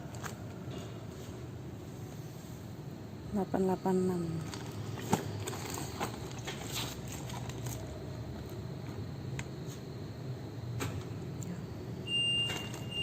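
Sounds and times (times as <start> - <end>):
packing machine humming: 4.1 - 13.0.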